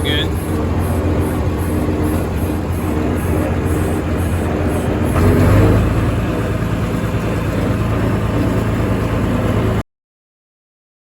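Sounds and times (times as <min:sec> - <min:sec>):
heavy farm machine engine: 0:00.0 - 0:09.8.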